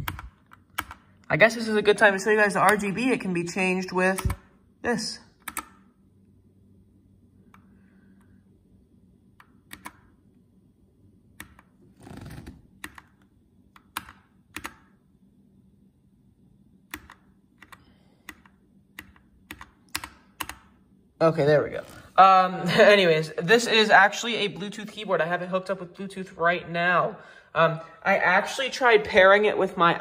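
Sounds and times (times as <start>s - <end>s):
keyboard key clicks: 0.0s - 1.0s, 9.4s - 10.1s, 12.8s - 14.9s, 16.9s - 20.7s.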